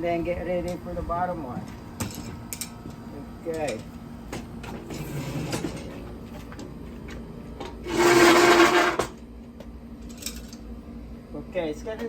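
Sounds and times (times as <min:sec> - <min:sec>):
chair handling and rustling: 0:03.6 - 0:09.2
loud harsh scrape: 0:07.8 - 0:09.1.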